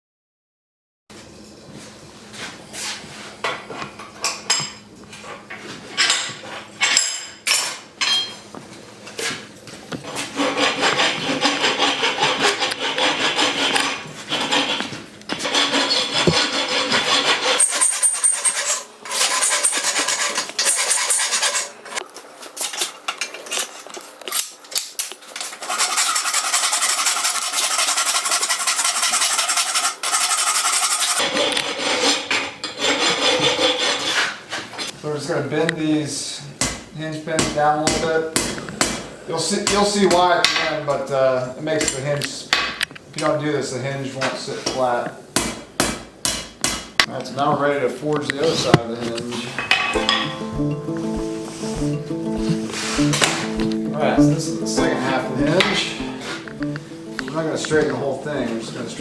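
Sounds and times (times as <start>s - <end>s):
scraping on iron: 10.0s - 22.0s
ringing metal strikes: 50.0s - 50.9s.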